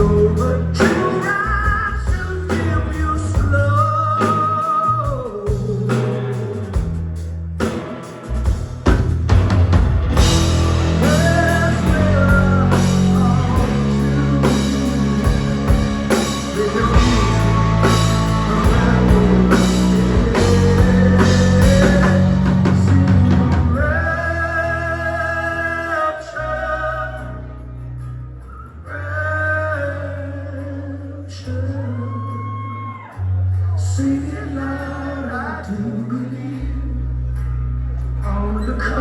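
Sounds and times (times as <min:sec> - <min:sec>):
drum kit: 0:00.0 - 0:24.0
live rock band playing: 0:00.0 - 0:25.7
electric guitar: 0:07.6 - 0:31.1.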